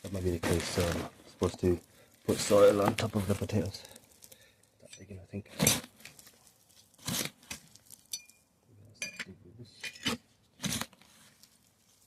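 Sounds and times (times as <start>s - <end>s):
digging in dry soil: 0.0s - 4.6s, 5.4s - 8.4s, 10.1s - 12.0s.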